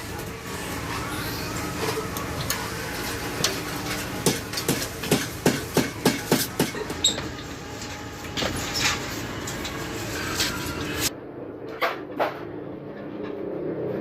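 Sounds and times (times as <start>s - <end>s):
workshop rumble: 0.0s - 14.0s
hammer striking sheet metal: 4.2s - 6.8s.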